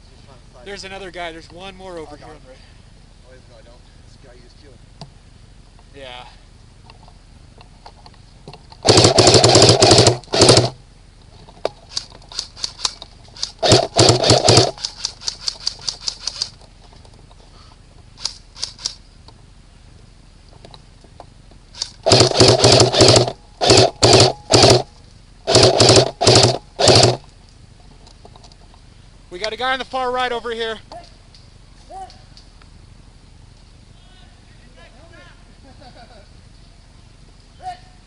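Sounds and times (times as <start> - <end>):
airsoft gun full-auto bursts: 8.8 - 10.8, 11.9 - 16.5, 21.8 - 24.9, 25.5 - 27.2.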